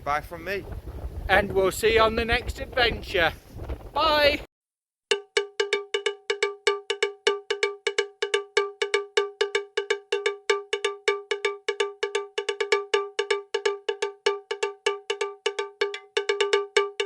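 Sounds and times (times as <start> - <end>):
cowbell-like metallic strikes: 5.1 - 17.0.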